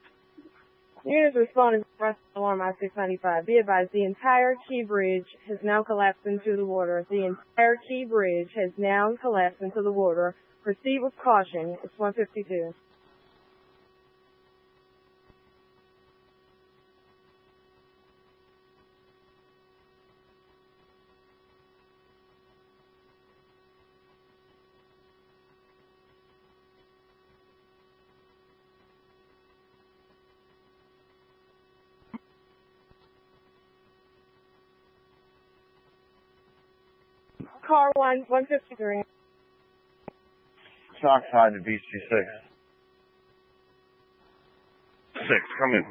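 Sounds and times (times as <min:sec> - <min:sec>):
faint electrical hum: 0:00.0 - 0:45.9.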